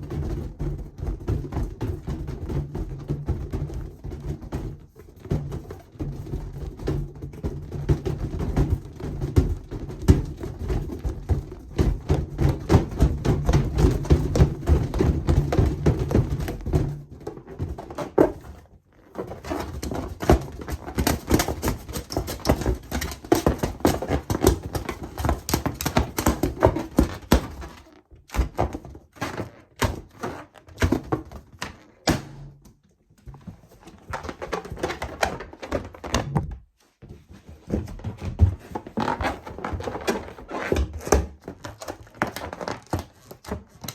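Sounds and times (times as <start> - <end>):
balloons rubbing and knocking: 33.3 - 43.9.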